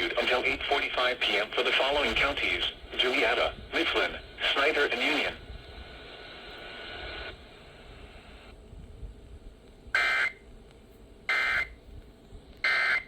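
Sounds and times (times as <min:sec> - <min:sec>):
radio static: 0:00.0 - 0:08.5.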